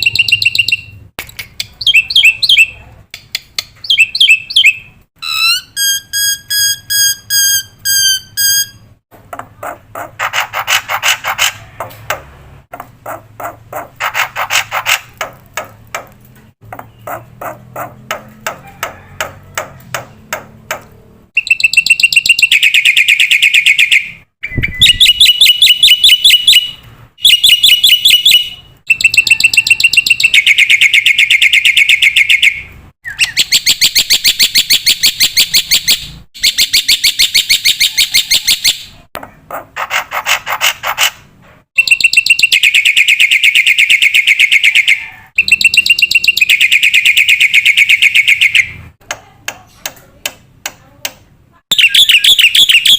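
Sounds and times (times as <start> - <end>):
bird singing rattling notes: 0.0 - 2.7, 16.6 - 19.1, 21.4 - 38.8, 45.4 - 48.7, 51.7 - 52.9
bird chattering: 0.0 - 8.7, 9.4 - 20.2, 51.7 - 52.9
bird clicking calls: 9.4 - 22.4.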